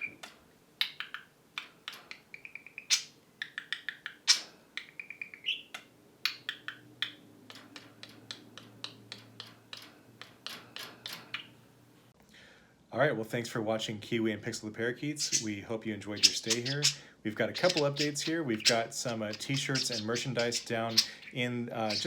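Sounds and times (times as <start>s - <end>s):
budgerigar chattering: 2.1s - 5.7s, 15.2s - 15.5s, 16.2s - 22.0s.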